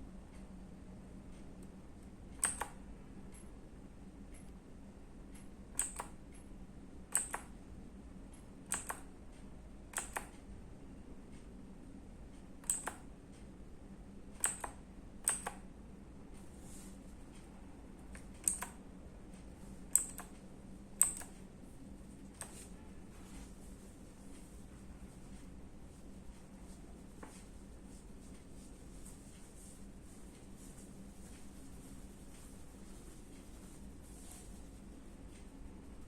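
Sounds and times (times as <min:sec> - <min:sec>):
mechanical keyboard key clicks: 0:02.4 - 0:02.8, 0:05.7 - 0:06.2, 0:07.1 - 0:07.5, 0:08.7 - 0:09.1, 0:09.9 - 0:10.4, 0:12.6 - 0:13.0, 0:14.4 - 0:15.6, 0:18.1 - 0:18.8, 0:19.9 - 0:20.4, 0:21.0 - 0:21.4.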